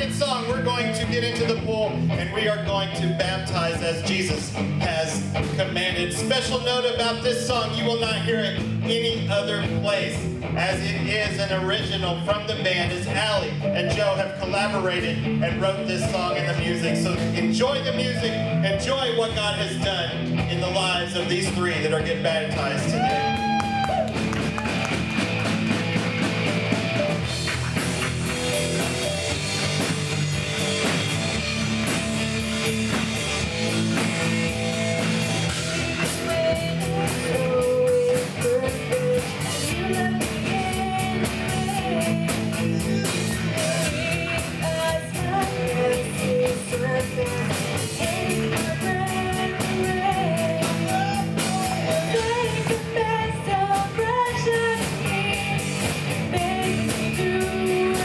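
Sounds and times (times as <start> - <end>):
rock band playing: 0.0 - 58.0
person singing: 35.5 - 58.0.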